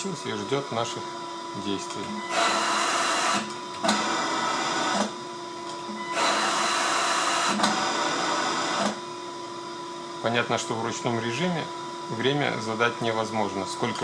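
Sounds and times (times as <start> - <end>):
blower humming: 0.0 - 14.0.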